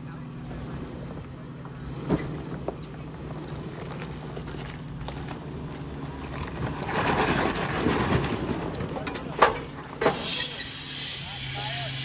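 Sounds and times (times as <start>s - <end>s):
engine running low: 0.0s - 12.0s
rough grinding noise: 0.6s - 9.5s.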